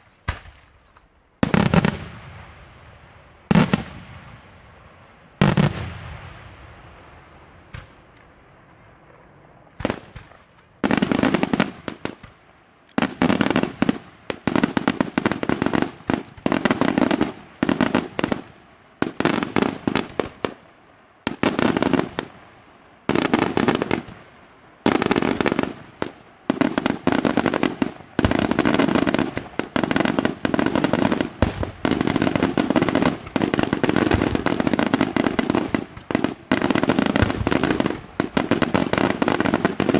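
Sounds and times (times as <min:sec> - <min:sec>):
firework bangs with echo: 0:01.4 - 0:18.5, 0:23.1 - 0:39.9
rapid-fire firework volleys: 0:25.0 - 0:39.9.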